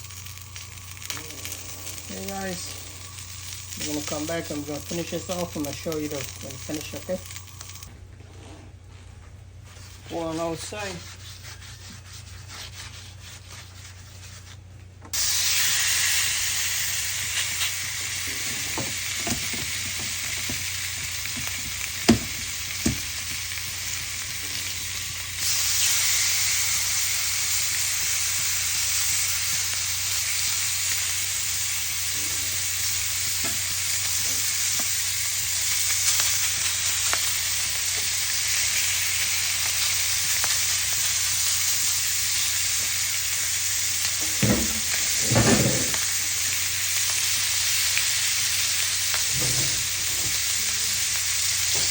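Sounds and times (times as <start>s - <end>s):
food sizzling on a grill: 0.0s - 7.9s, 9.6s - 14.4s, 15.1s - 51.9s.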